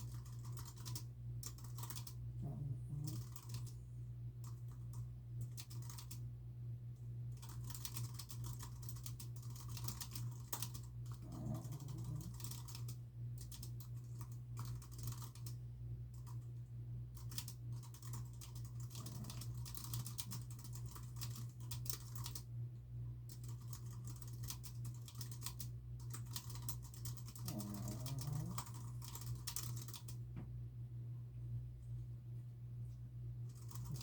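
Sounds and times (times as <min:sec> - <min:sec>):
typing on computer keyboard: 0:00.0 - 0:02.2, 0:02.9 - 0:03.7, 0:04.4 - 0:06.2, 0:07.4 - 0:16.4, 0:17.2 - 0:22.5, 0:23.3 - 0:30.2, 0:33.5 - 0:34.0
steady low hum: 0:00.0 - 0:34.0.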